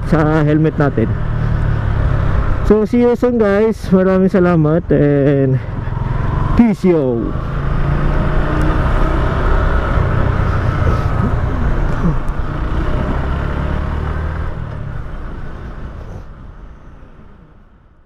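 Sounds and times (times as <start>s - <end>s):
road and traffic noise: 0.0s - 18.0s.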